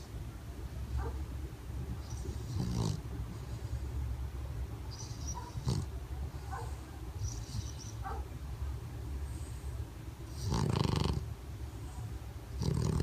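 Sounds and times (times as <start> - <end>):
dog snoring: 2.1 - 3.6, 5.1 - 5.9, 10.3 - 11.3, 12.6 - 13.0.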